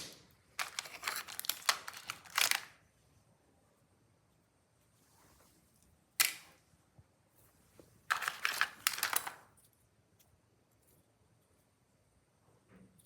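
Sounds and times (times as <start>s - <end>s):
plastic crackling clicks: 0.0s - 2.8s, 8.1s - 9.4s.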